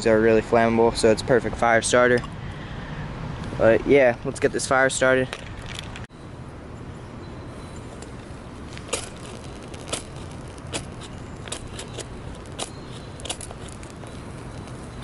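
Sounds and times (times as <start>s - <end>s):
kindling crackling: 7.7s - 15.0s.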